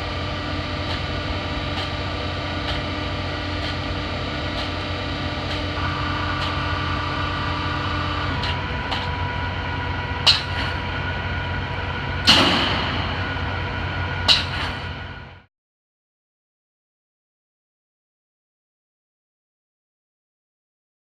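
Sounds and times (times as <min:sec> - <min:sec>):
filter press machinery humming: 0:00.0 - 0:15.5
sharp metal clanks: 0:10.3 - 0:10.8, 0:12.3 - 0:13.5, 0:14.2 - 0:14.9.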